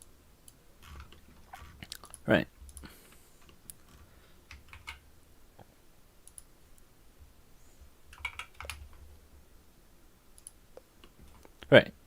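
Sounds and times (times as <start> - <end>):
keyboard and mouse clicking: 0.4 - 5.0, 6.2 - 6.5, 8.1 - 9.0, 10.4 - 11.5.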